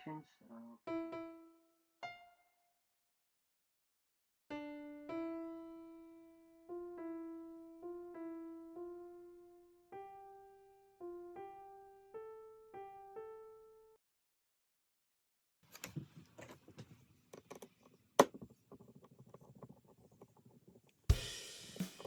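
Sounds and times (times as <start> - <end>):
slow piano melody: 0.8 - 2.6, 4.5 - 14.0.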